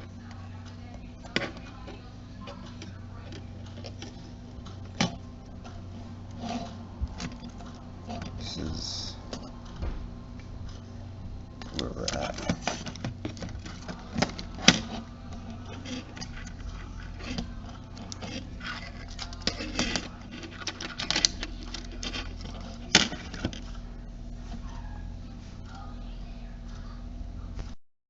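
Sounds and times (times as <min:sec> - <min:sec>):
low hum: 0:00.0 - 0:27.8
small tools clicking and rattling: 0:11.6 - 0:23.8.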